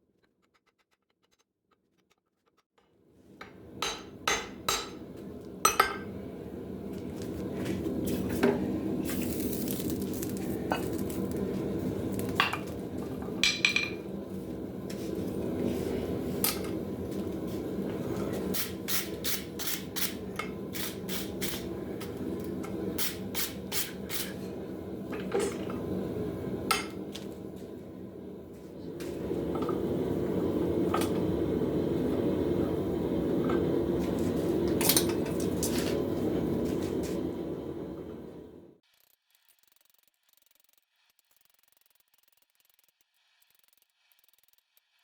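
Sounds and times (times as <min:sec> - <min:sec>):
steady low hum: 0:03.3 - 0:38.8
steel tools tapping on anvil: 0:03.8 - 0:05.0.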